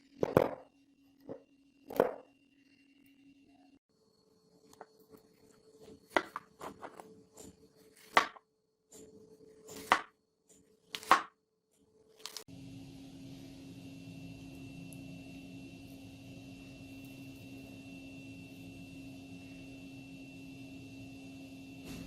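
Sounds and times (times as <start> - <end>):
knife chopping on cutting surface: 8.0 - 8.4, 9.7 - 10.1, 10.9 - 11.3
steady hum: 12.5 - 22.0.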